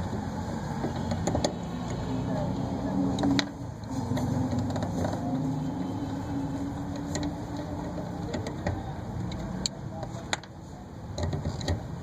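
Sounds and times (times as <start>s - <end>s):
vehicle engine humming: 0.0s - 12.0s
light clicks and knocks: 6.9s - 12.0s.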